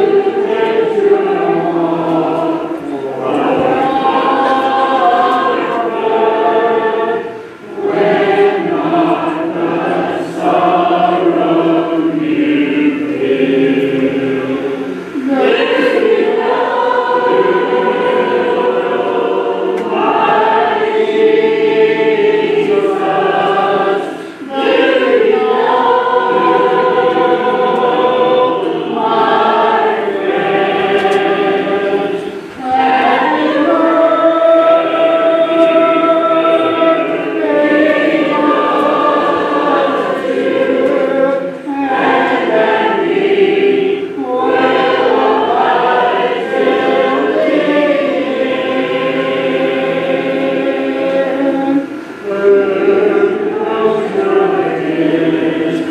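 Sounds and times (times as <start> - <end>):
congregation singing a hymn: 0.0 - 55.9.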